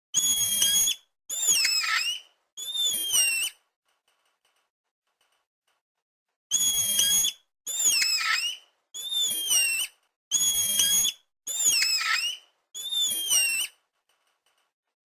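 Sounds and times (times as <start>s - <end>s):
monkey screeching: 0.2s - 3.6s, 6.5s - 13.8s.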